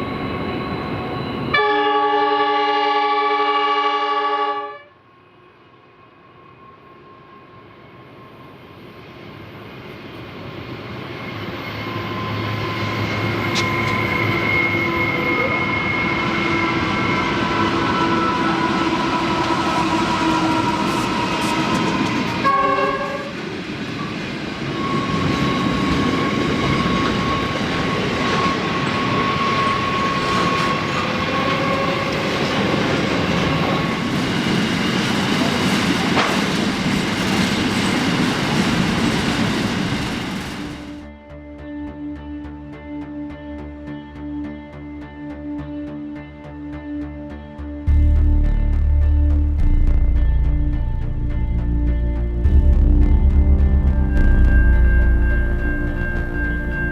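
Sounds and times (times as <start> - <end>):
diesel freight train passing: 0.0 - 41.2, 47.8 - 56.9
train horn blast: 1.1 - 5.0, 13.5 - 23.4.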